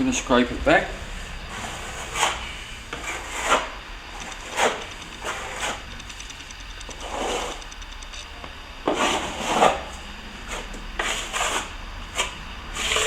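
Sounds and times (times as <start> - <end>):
hand scraper rasping on cement: 1.6 - 3.7, 4.4 - 5.8, 10.5 - 13.0.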